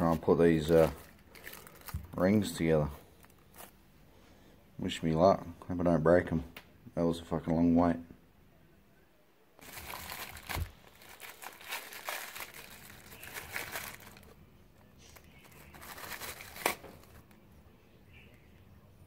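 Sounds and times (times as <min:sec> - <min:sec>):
packaging crinkling: 0:00.0 - 0:02.3, 0:09.6 - 0:17.4.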